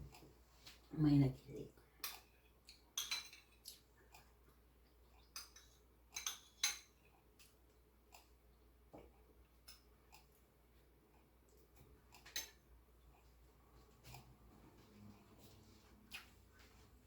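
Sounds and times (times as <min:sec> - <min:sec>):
utensils clinking on dishware: 0:03.0 - 0:03.6, 0:05.3 - 0:07.0.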